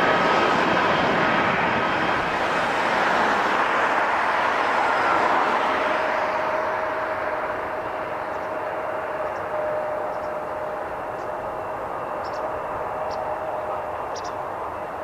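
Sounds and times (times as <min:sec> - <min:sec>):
jet engine rush: 0:00.0 - 0:15.0
faint whine: 0:05.0 - 0:15.0.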